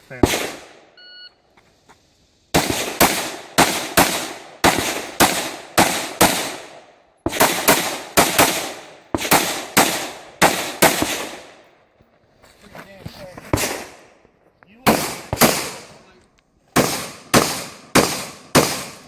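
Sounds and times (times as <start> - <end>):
rifle shots with echo: 0.0 - 0.9, 2.5 - 11.7, 13.5 - 14.1, 14.8 - 16.0, 16.8 - 19.0
shot timer beep: 1.0 - 1.4.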